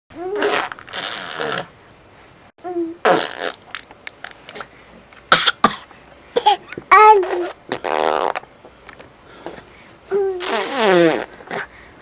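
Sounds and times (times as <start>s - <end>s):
baby blowing raspberries: 0.2s - 1.7s, 7.2s - 8.4s, 10.2s - 11.8s.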